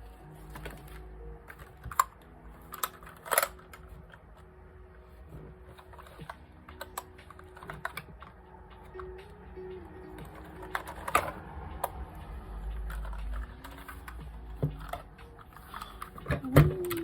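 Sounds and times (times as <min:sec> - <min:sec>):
background music: 0:00.0 - 0:17.0
keyboard keys clicking: 0:05.8 - 0:17.0.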